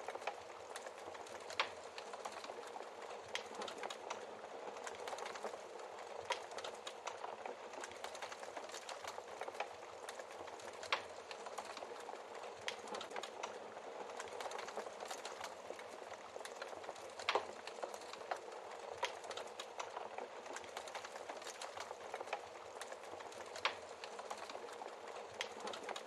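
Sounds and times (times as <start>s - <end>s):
wood fire crackling: 0.0s - 26.0s.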